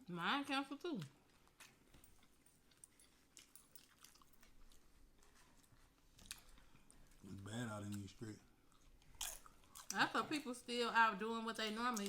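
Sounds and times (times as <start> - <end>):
close-up chewing with crunches: 1.2 - 10.1.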